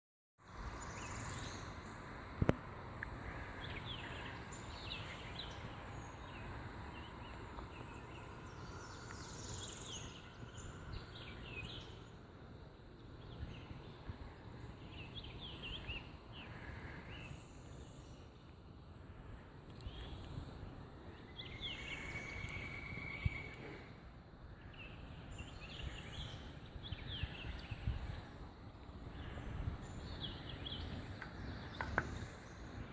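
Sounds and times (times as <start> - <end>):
outdoor background hiss: 0.4 - 32.9
birds chirping and whistling: 3.6 - 12.2, 13.1 - 18.2, 21.1 - 24.0, 24.6 - 28.3, 29.1 - 32.8.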